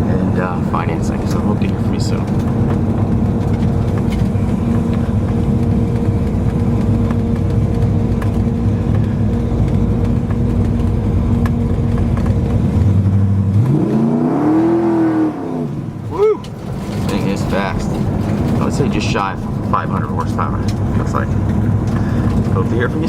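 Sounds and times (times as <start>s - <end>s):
car engine droning and revving: 0.0s - 23.0s.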